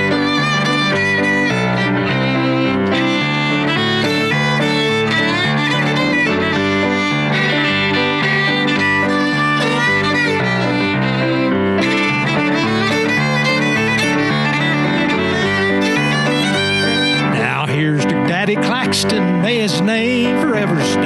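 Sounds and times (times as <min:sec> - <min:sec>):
fiddle melody: 0:00.0 - 0:21.0
piano accompaniment: 0:00.0 - 0:21.0.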